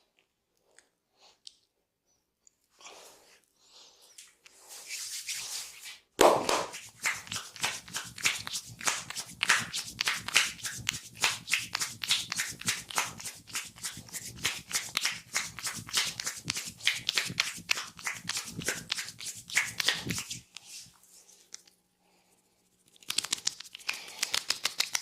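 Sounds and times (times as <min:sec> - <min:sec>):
hands slapping skin in massage: 0:04.9 - 0:20.9, 0:22.9 - 0:25.0.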